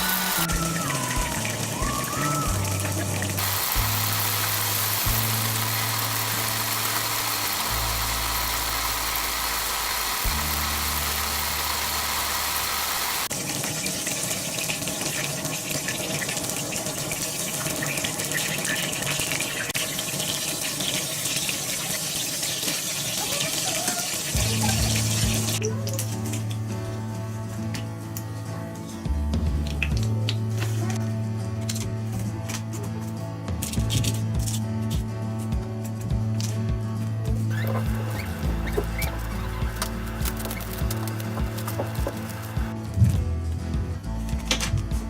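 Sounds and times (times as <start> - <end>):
background music with bass line: 0.0 - 13.2, 24.4 - 45.0
oil sizzling and crackling: 0.0 - 25.6, 37.5 - 43.0.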